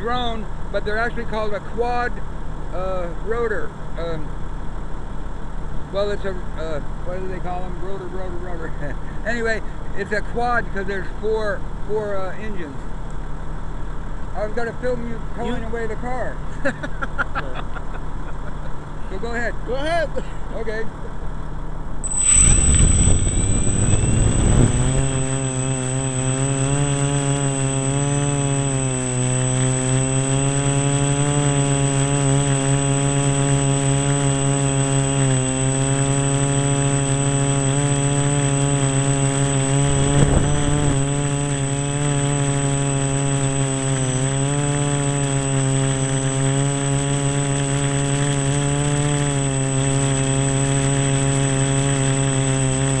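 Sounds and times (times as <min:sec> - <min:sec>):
rush of noise: 0:22.0 - 0:25.5
drone propellers buzzing: 0:22.0 - 0:53.0.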